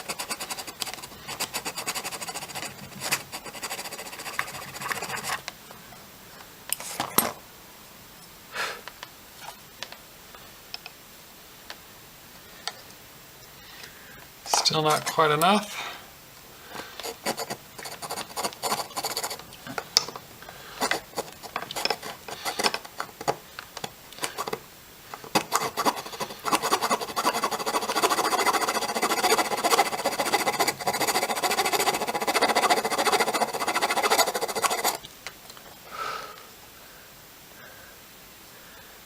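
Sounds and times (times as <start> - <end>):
nail file rasping on board: 0.0 - 5.4, 17.0 - 19.5, 20.8 - 23.1, 25.4 - 35.0.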